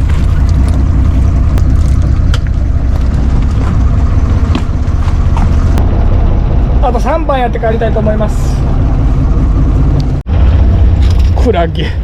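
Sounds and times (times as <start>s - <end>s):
boat engine droning: 0.0s - 12.0s.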